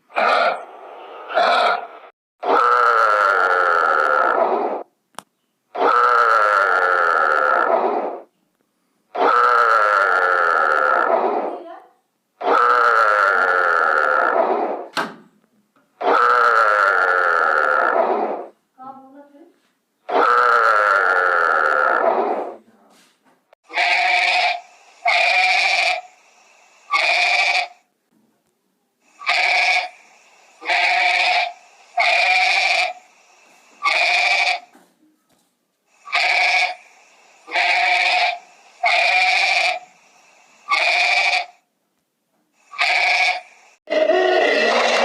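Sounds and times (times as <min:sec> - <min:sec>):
farm animal bleating: 0:16.0 - 0:17.9, 0:20.1 - 0:22.0, 0:23.7 - 0:26.0, 0:26.9 - 0:27.7, 0:29.2 - 0:29.9, 0:30.6 - 0:33.0, 0:33.8 - 0:34.7, 0:36.1 - 0:36.8, 0:37.5 - 0:39.8, 0:40.7 - 0:41.5, 0:42.7 - 0:43.4.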